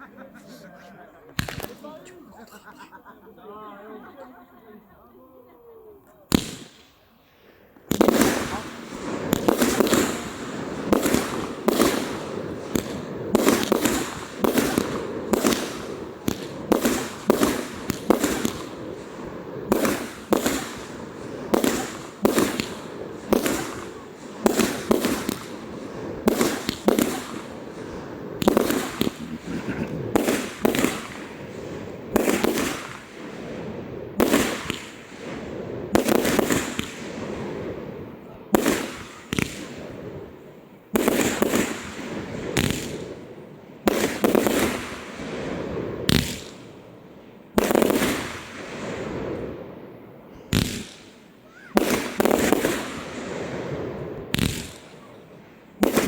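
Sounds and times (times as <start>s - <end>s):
fireworks bursting with bangs: 1.3s - 3.0s, 6.1s - 56.0s.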